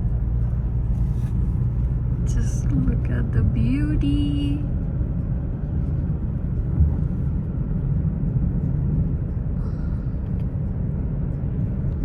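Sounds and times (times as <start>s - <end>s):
road and engine rumble in car: 0.0s - 12.0s
low thump: 6.7s - 7.0s.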